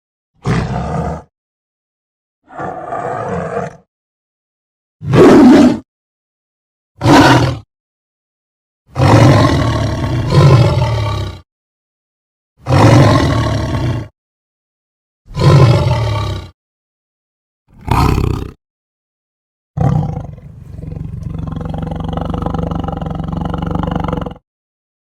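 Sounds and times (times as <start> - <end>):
tiger roaring: 0.4 - 1.3, 2.5 - 3.8, 5.0 - 5.8, 7.0 - 7.6, 8.9 - 11.4, 12.6 - 14.1, 15.3 - 16.5, 17.7 - 18.6, 19.8 - 24.4.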